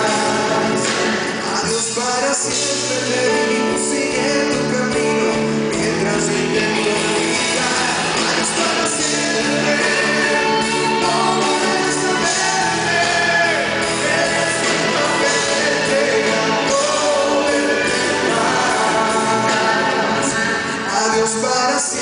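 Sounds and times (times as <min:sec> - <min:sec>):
live band music: 0:00.0 - 0:22.0.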